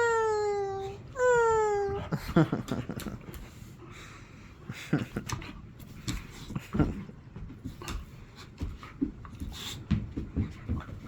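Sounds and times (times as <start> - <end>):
puppy scuffling and thumping: 5.2 - 11.0.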